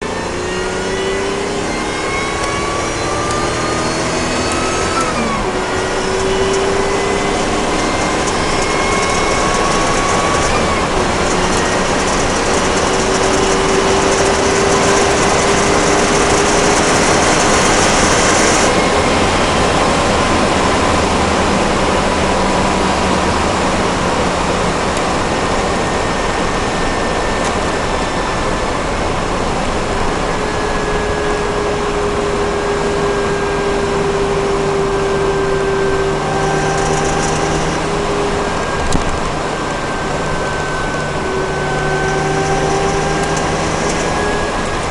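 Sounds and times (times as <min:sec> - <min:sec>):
car engine accelerating through gears: 0:00.0 - 0:44.9
engine knocking rattle: 0:07.4 - 0:20.7.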